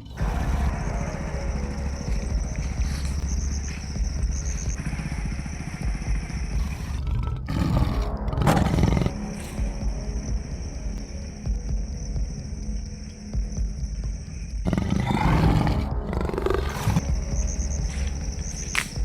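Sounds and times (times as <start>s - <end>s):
background music: 0.0s - 19.0s
tiger roaring: 6.5s - 9.5s, 14.6s - 18.8s.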